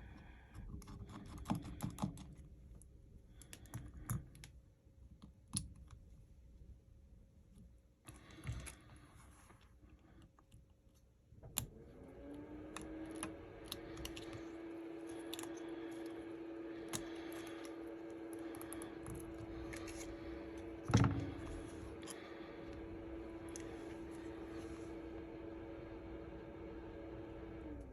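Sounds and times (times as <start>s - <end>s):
small motor hum: 11.6s - 27.9s
hand tools clicking on phone parts: 12.7s - 16.2s.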